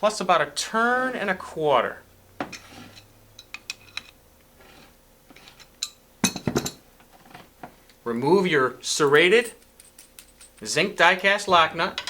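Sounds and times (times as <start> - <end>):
small metal clicks and clinks: 9.4 - 10.7.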